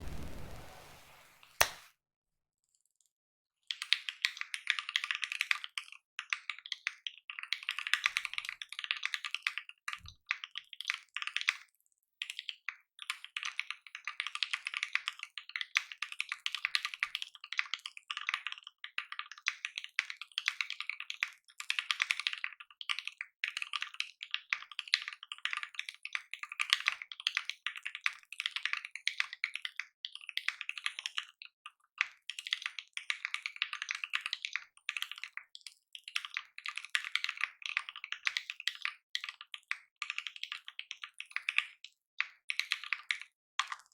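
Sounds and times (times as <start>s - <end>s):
fast typing on mechanical keyboard: 32.0s - 41.8s.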